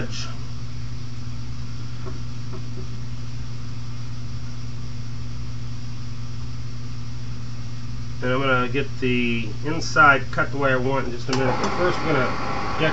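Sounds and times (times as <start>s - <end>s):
wood lathe humming: 11.4s - 12.9s.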